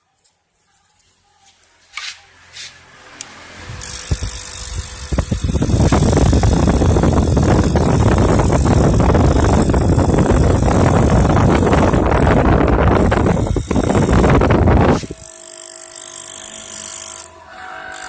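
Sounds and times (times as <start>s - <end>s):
mortising machine motor: 3.6s - 18.0s
chisel cutting wood: 3.8s - 18.0s.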